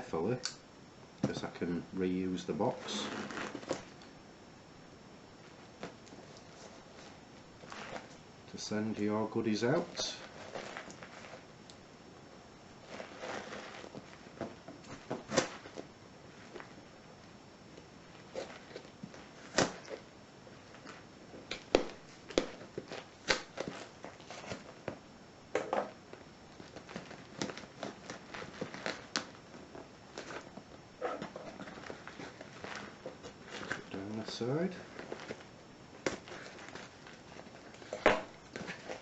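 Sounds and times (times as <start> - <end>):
tape and flaps cracking: 13.0 - 15.9.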